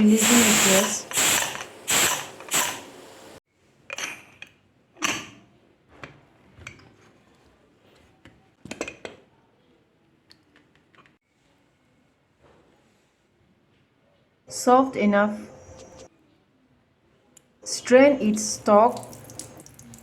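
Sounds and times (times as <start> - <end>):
pressure cooker steam hissing: 0.0 - 3.4.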